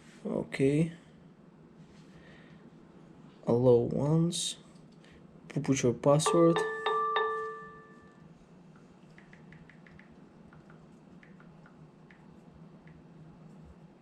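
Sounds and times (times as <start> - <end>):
tapping on phone screen: 6.3 - 7.9
electronic chime: 6.3 - 8.2.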